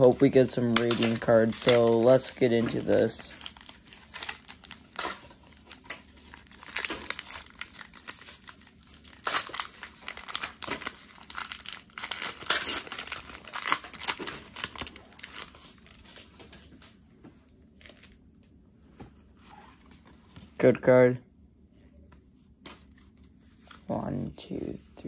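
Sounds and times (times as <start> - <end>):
foil wrapper crinkling and tearing: 0.0 - 16.3.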